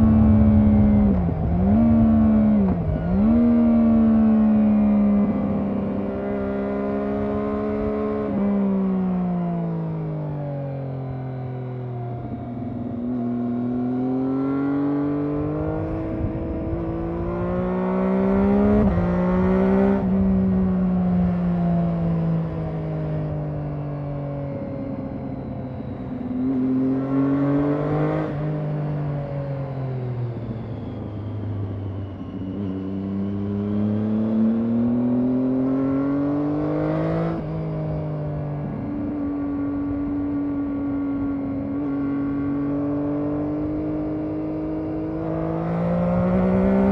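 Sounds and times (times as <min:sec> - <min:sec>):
motorcycle engine revving: 0:00.0 - 0:08.6, 0:12.6 - 0:23.5, 0:32.7 - 0:46.9.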